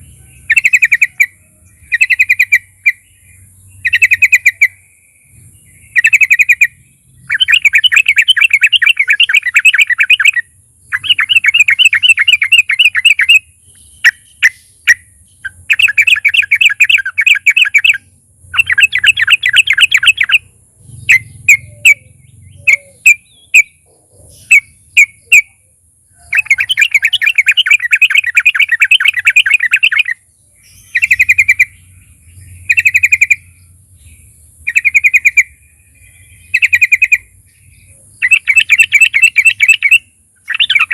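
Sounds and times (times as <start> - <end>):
bird chattering and whistling: 0.0 - 40.9.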